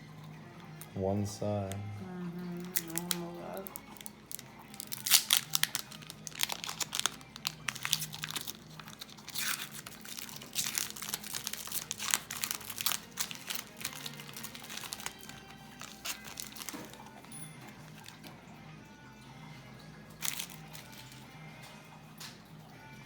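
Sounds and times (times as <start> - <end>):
faint background music: 0.0 - 23.0
foil wrapper crinkling: 2.5 - 18.3, 20.2 - 21.2.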